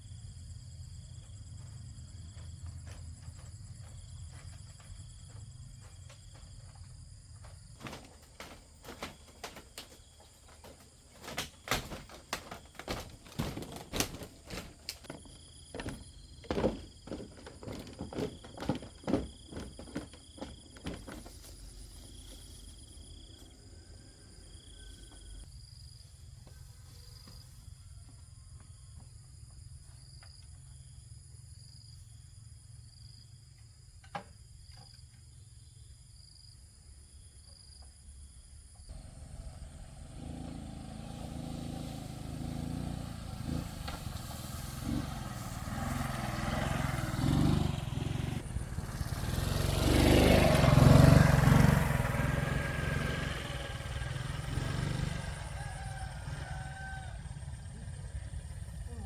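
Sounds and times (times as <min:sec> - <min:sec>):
insects trilling: 0:00.0 - 0:59.0
knocks and thuds: 0:01.2 - 0:21.6.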